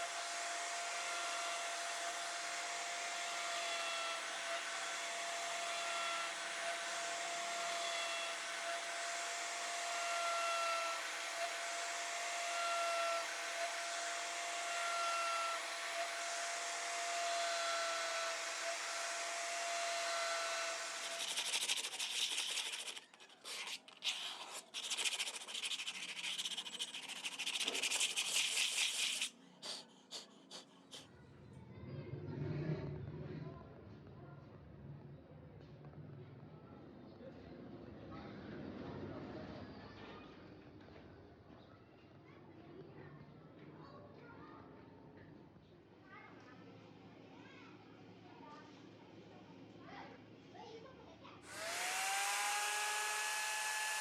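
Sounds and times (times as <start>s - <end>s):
router whine with cutting hiss: 0.0s - 22.8s, 51.5s - 54.0s
irregular rasping bursts: 0.0s - 31.1s, 51.5s - 54.0s.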